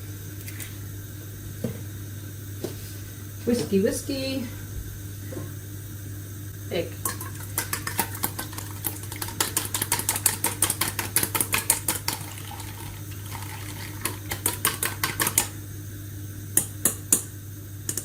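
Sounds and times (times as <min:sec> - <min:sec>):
whisk tapping against bowl: 0:07.1 - 0:12.3, 0:13.8 - 0:15.5.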